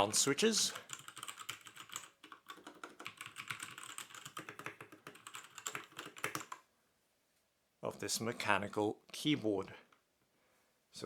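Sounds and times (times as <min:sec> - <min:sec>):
mechanical keyboard typing: 0:00.7 - 0:06.6.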